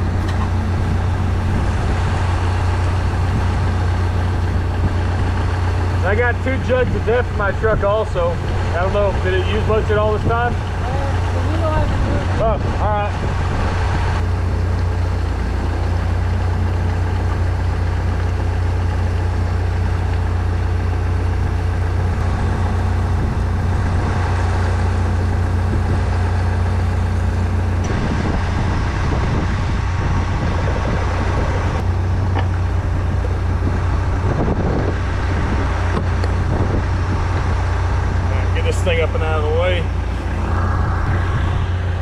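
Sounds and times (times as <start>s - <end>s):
engine idling: 0.0s - 42.0s.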